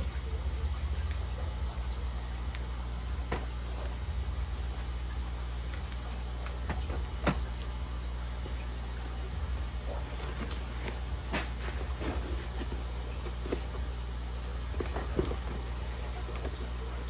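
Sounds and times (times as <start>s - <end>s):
steady low hum: 0.0s - 17.0s
packaging clicks and rustles: 10.0s - 14.0s, 14.6s - 17.0s.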